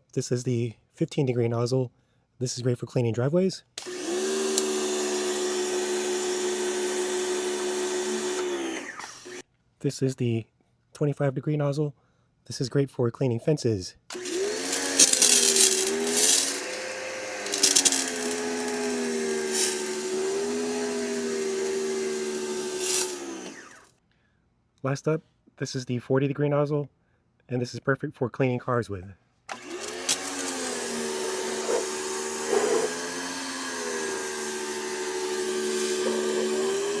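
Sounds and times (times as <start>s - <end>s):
pressure washer motor whine: 3.8s - 9.4s, 14.1s - 23.9s, 29.5s - 37.0s
water spray hissing: 32.5s - 32.9s.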